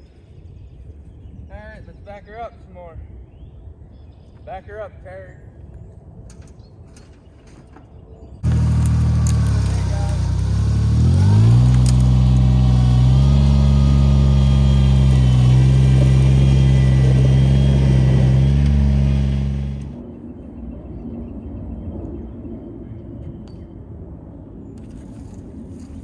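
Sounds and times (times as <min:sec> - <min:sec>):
tractor diesel engine running: 0:08.4 - 0:20.0.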